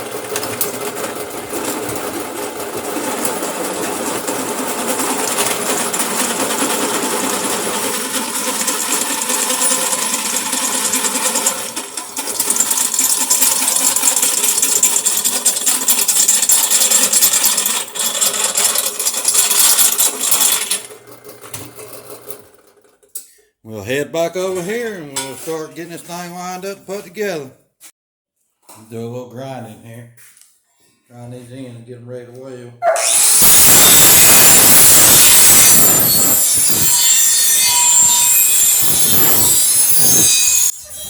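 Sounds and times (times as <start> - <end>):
drill press motor running: 0.0 - 22.9, 32.9 - 40.7
drill bit grinding steel: 7.1 - 21.0, 32.9 - 41.0.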